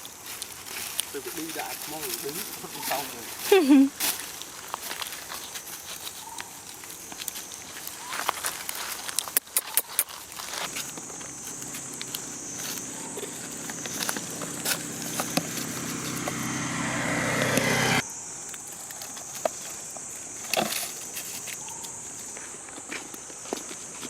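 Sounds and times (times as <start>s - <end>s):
light ticks and rustles: 0.0s - 12.8s
steady high-pitched drone: 10.7s - 18.0s
vehicle engine running: 10.7s - 18.0s.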